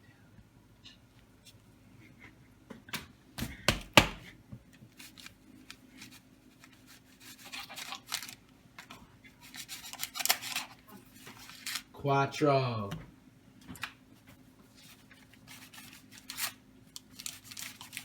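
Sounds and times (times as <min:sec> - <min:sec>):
dough scraping and rubbing: 0:04.9 - 0:08.3, 0:09.3 - 0:11.8, 0:14.2 - 0:18.0.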